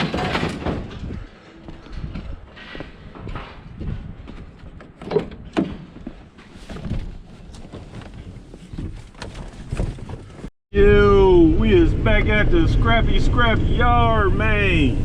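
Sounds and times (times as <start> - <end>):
knocks and clanks: 0.0 - 10.5
constant low rumble: 10.2 - 15.0.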